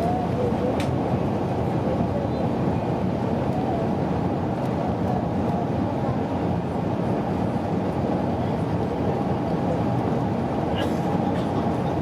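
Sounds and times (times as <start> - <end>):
airliner cabin rumble: 0.0 - 12.0.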